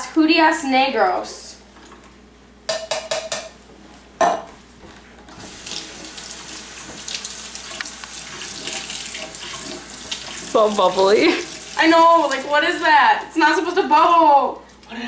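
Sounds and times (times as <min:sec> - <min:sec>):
kitchen tap running into sink: 0:05.4 - 0:12.8.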